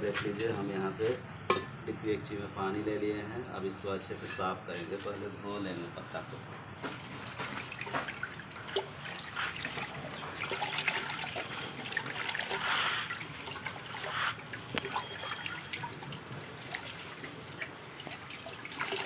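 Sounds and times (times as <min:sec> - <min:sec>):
small splashes and clicks: 0:06.8 - 0:19.0
water sloshing in a pot: 0:06.8 - 0:19.0.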